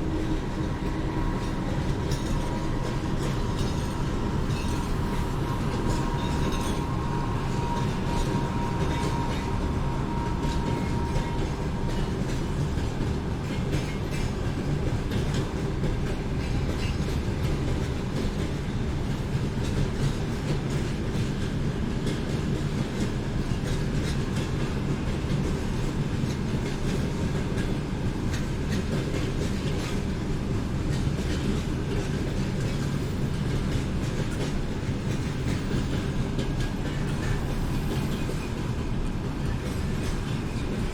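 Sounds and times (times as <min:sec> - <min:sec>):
train rumbling past: 0:00.0 - 0:40.9.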